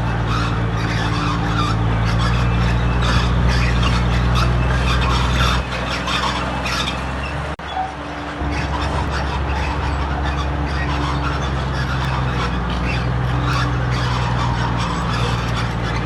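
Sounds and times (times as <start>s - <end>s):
heavy diesel machinery engine drone: 0.0s - 16.0s
scraping and squealing: 0.0s - 16.0s.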